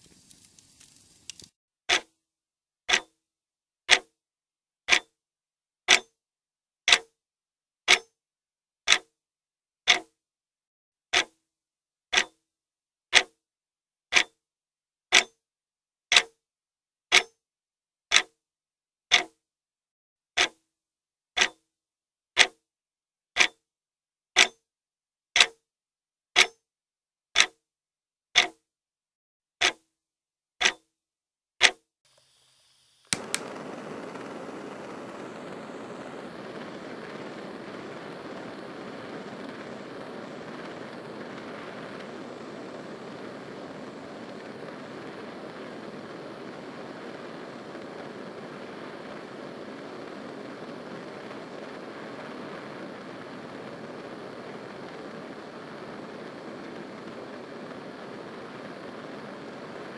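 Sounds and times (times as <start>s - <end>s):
steady rushing noise: 33.2s - 59.9s.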